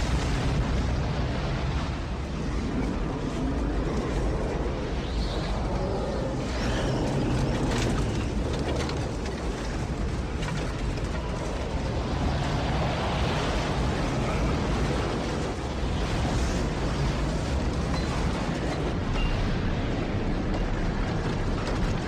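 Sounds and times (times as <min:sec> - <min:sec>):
storm wind roaring: 0:00.0 - 0:22.0.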